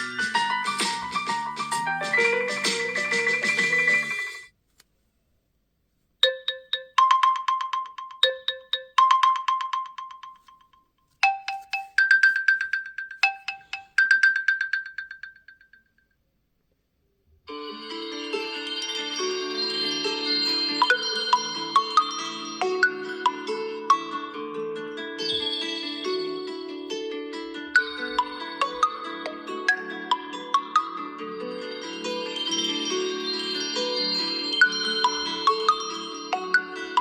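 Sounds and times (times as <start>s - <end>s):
bright chiming ringtone melody: 0.0s - 4.5s, 6.2s - 15.7s, 17.5s - 37.0s
phone ringtones: 11.2s - 15.3s, 17.5s - 24.2s, 27.8s - 37.0s.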